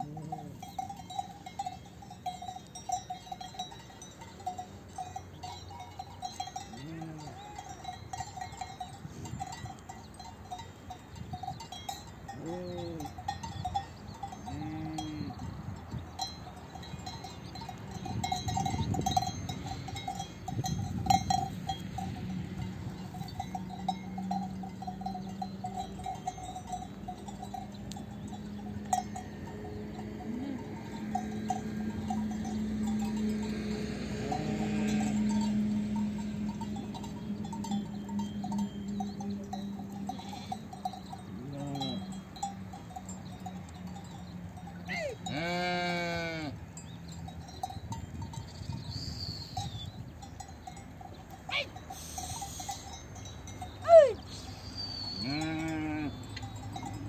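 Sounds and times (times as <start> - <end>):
livestock bells clanking: 0.0 - 57.0
sheep bleat: 45.1 - 46.6, 55.2 - 56.2.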